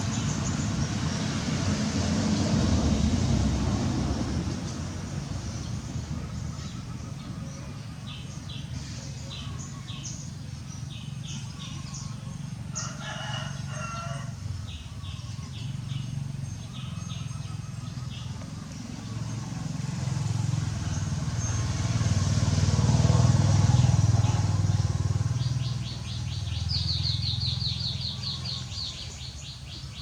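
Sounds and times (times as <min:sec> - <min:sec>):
small birds chirping: 0:04.6 - 0:21.9, 0:23.1 - 0:30.0
rooster crowing: 0:12.7 - 0:14.5.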